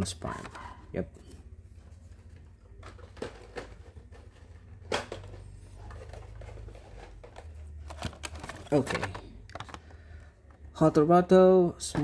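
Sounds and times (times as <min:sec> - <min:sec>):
plastic and card clicks and rustles: 0:01.8 - 0:10.9.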